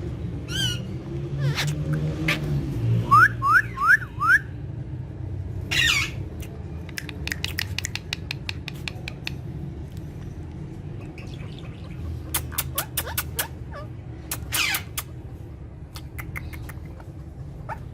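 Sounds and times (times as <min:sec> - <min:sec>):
parrot harsh squawk: 0:00.5 - 0:02.6, 0:05.7 - 0:06.2, 0:11.1 - 0:15.1, 0:17.0 - 0:17.9
sharp clicks: 0:06.4 - 0:09.5.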